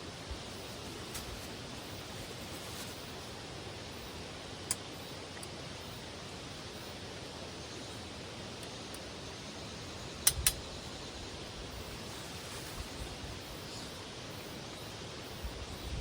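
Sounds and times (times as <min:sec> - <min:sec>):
steady outdoor hiss: 0:00.0 - 0:16.0
sharp clicks: 0:10.2 - 0:10.7.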